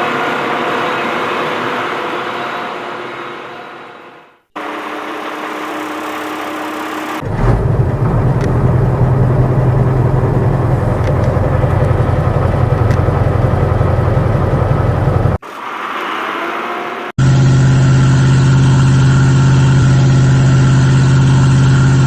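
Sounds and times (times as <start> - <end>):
heavy vehicle engine rumbling: 5.2 - 22.0.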